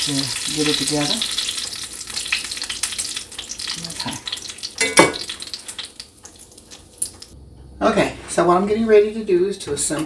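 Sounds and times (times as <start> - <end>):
fish frying in oil: 0.0 - 7.4.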